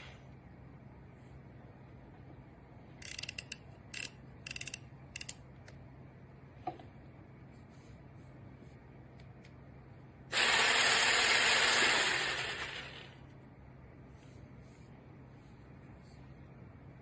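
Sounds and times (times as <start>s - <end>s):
fast ratcheting: 10.3s - 13.1s.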